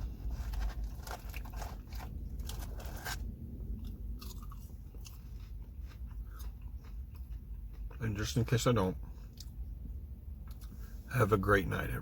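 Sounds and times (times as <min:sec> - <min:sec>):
person chewing crunchy food: 0:00.0 - 0:08.4.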